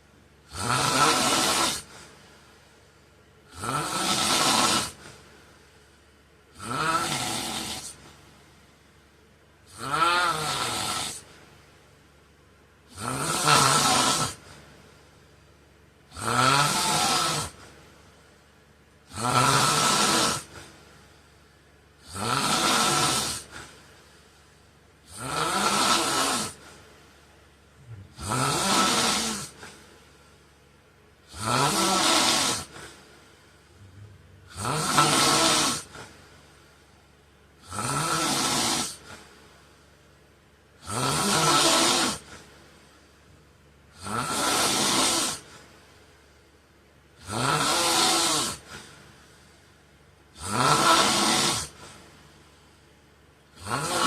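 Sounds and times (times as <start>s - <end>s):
man snoring: 0.5s - 2.1s, 3.5s - 5.2s, 6.5s - 8.1s, 9.6s - 11.3s, 12.9s - 14.5s, 16.1s - 17.7s, 19.0s - 20.7s, 22.0s - 23.7s, 25.0s - 26.8s, 27.8s - 29.8s, 31.3s - 33.0s, 33.8s - 36.2s, 37.6s - 39.3s, 40.8s - 42.5s, 43.9s - 45.6s, 47.2s - 49.0s, 50.4s - 52.0s, 53.6s - 54.0s.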